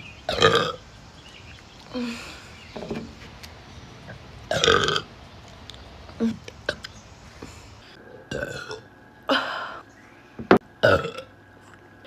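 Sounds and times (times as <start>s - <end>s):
woman burping: 10.8s - 11.3s.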